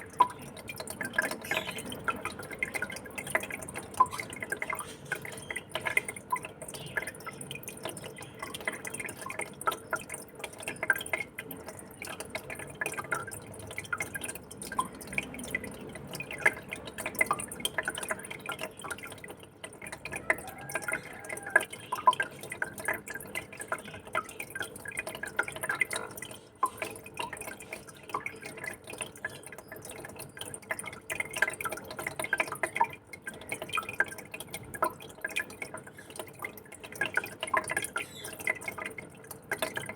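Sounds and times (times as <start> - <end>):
aquarium water trickling: 0.0 - 39.9.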